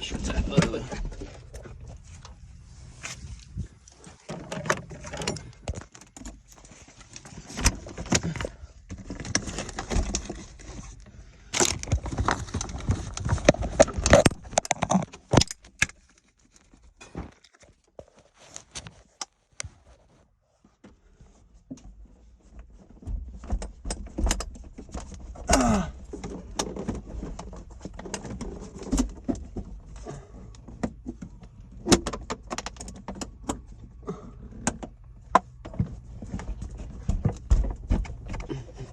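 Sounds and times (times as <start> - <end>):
loose objects clattering: 3.4 - 16.0.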